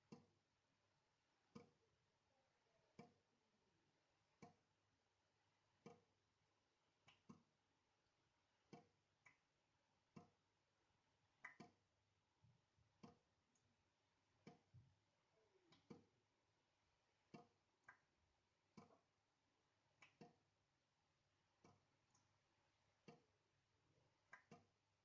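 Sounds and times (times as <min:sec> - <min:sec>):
water dripping into a sink: 0:00.0 - 0:00.4, 0:01.4 - 0:01.9, 0:02.7 - 0:03.3, 0:04.3 - 0:04.7, 0:05.7 - 0:06.2, 0:06.9 - 0:07.6, 0:08.6 - 0:10.5, 0:11.2 - 0:16.2, 0:17.1 - 0:20.6, 0:21.4 - 0:25.0.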